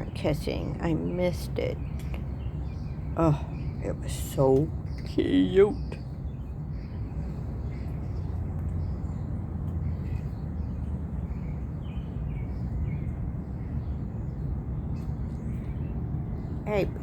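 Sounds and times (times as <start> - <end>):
small birds chirping: 0.0 - 17.0
steady low rumble: 0.0 - 17.0.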